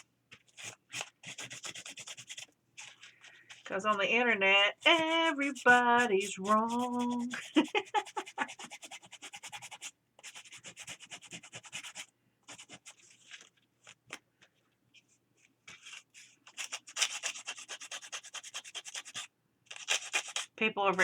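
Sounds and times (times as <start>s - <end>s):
sandpaper rubbing on paper edges: 4.8s - 13.1s, 16.5s - 20.5s.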